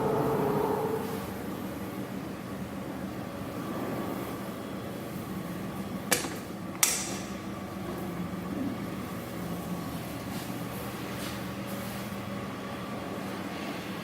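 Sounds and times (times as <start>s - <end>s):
diesel generator humming: 0.0s - 3.6s.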